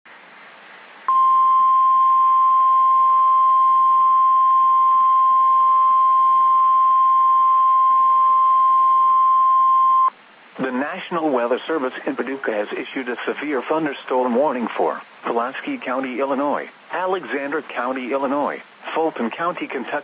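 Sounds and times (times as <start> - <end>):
faint radio hiss: 0.1 - 20.0
steady warning beep: 1.1 - 10.1.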